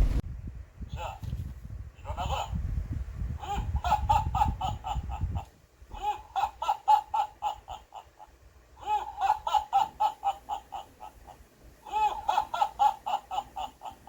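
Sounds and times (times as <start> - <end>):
high-pitched laugh: 2.0 - 2.6, 3.4 - 14.0.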